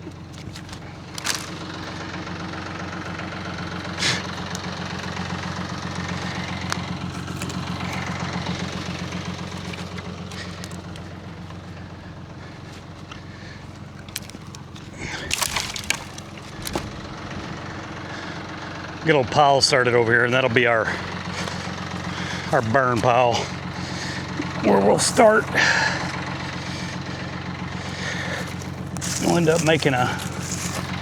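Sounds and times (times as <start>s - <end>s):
tractor engine running: 0.0s - 31.0s
short sharp cracks: 13.4s - 17.1s.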